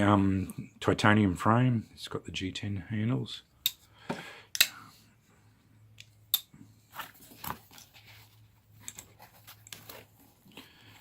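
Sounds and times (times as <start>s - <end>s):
folding knife clicks: 4.5s - 4.8s.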